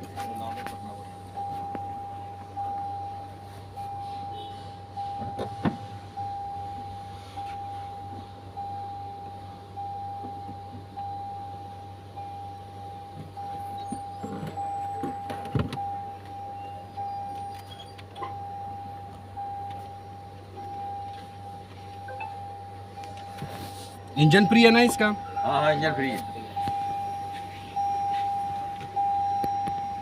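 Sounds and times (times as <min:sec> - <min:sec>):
low hum: 0:00.0 - 0:30.0
car warning chime beeping: 0:00.2 - 0:30.0.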